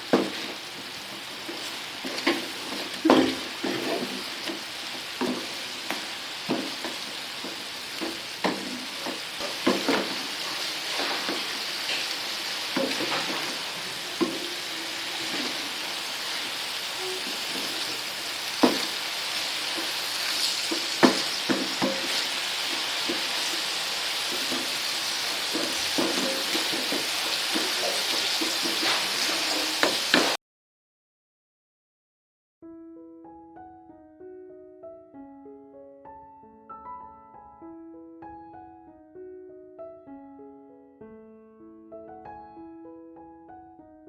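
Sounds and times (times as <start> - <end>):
food sizzling in hot oil: 0.0 - 30.4
spatula knocking against pan: 20.7 - 23.4, 25.5 - 29.0.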